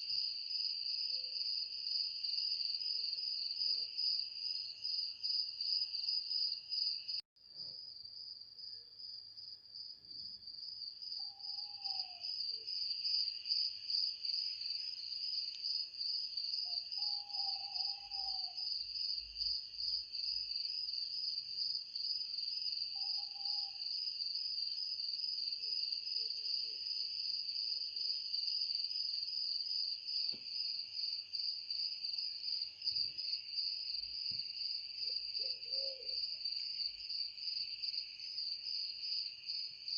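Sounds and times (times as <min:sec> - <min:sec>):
crickets chirring: 0:11.1 - 0:20.9.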